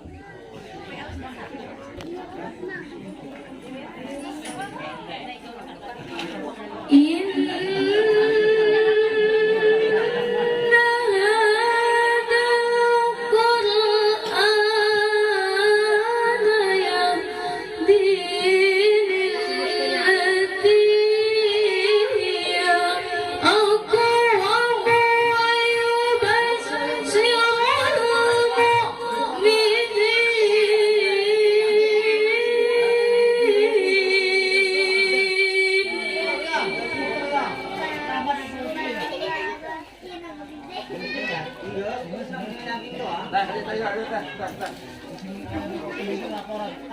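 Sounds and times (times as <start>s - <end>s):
woman chanting melodically: 6.8s - 39.1s.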